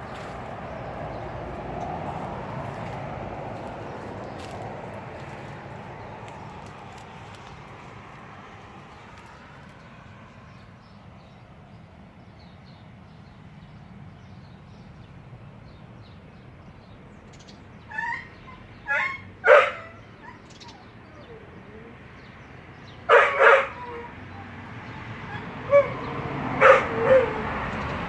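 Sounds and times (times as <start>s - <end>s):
dog yelping: 17.9s - 22.0s, 23.1s - 27.6s.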